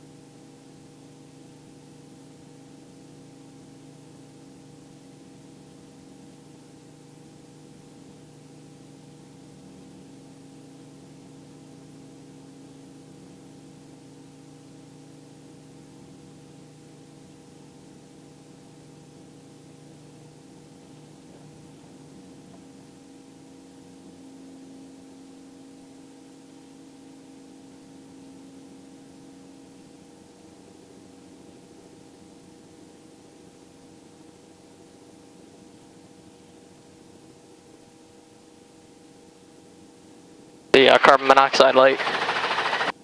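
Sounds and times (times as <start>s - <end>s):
helicopter running: 40.8s - 43.0s.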